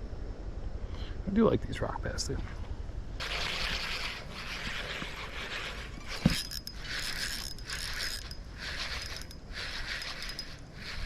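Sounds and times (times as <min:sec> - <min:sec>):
fishing reel whirring: 0:03.2 - 0:11.0.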